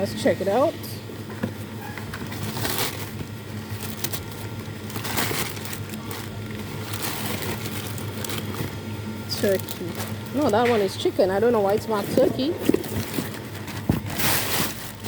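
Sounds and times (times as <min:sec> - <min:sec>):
steady low hum: 0:00.0 - 0:15.0
meat package crinkling: 0:02.0 - 0:15.0.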